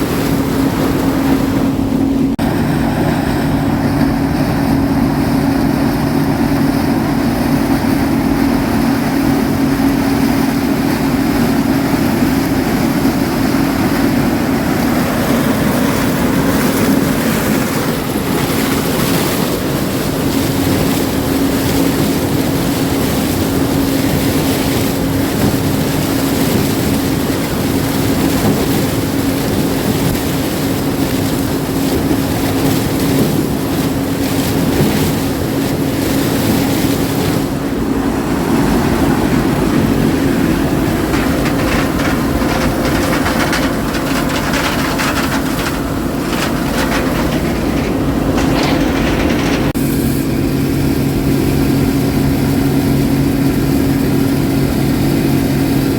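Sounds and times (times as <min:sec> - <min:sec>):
farm machinery engine hum: 0:00.0 - 0:55.9
mechanical rushing noise: 0:35.2 - 0:53.5.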